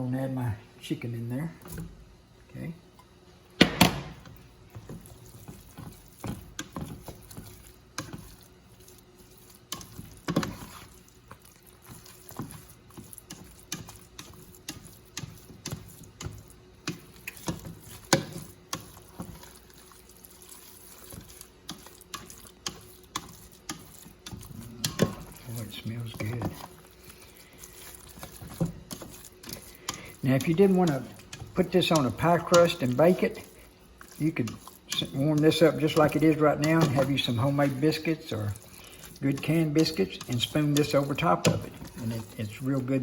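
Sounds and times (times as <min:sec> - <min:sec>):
spoon scraping and knocking pan: 0:03.6 - 0:43.0
spoon stirring thick gravy: 0:04.2 - 0:43.0.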